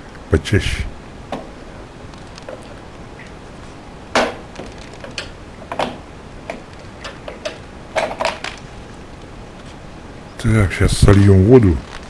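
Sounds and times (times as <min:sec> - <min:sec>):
hard plastic parts clicking: 0:04.2 - 0:08.7.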